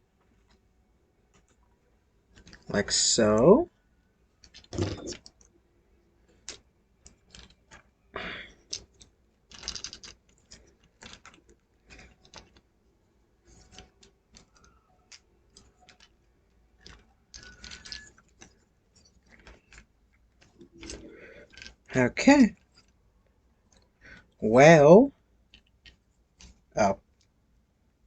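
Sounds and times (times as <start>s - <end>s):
plastic parts clicking and snapping: 2.3s - 2.7s, 4.4s - 5.5s, 6.2s - 12.8s, 13.4s - 21.9s, 25.5s - 27.4s.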